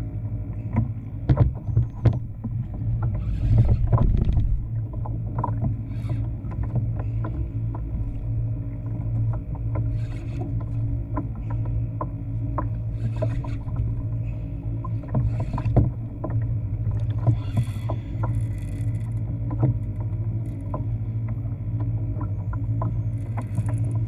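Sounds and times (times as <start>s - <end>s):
steady low hum: 0.0s - 24.0s
sharp clicks and knocks: 0.8s - 5.7s.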